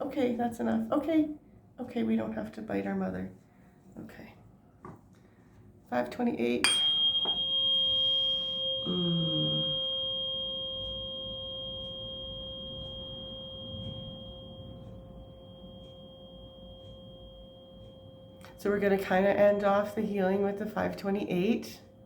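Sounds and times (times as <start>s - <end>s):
tuning fork ringing: 6.6s - 22.0s.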